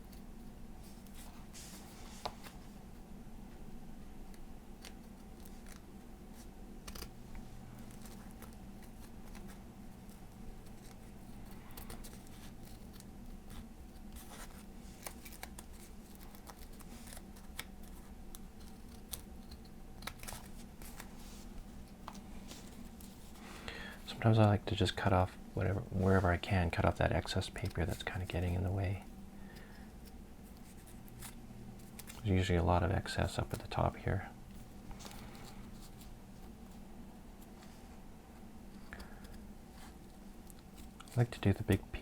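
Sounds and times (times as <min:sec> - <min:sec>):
scissors snipping paper: 0:07.8 - 0:21.1.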